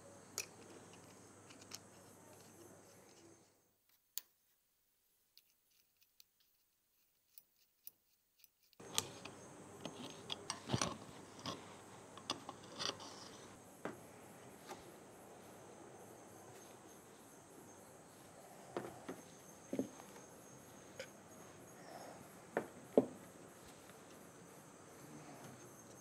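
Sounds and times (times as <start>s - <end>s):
steady background hiss: 0.0s - 26.0s
small metal parts clicking: 0.4s - 3.3s.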